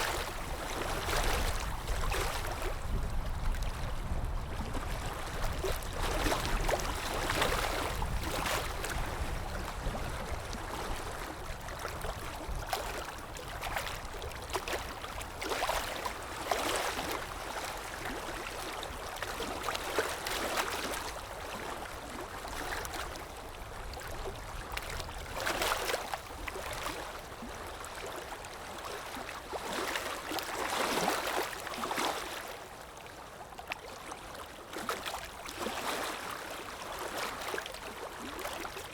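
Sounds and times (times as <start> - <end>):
water lapping and splashing: 0.0 - 38.9.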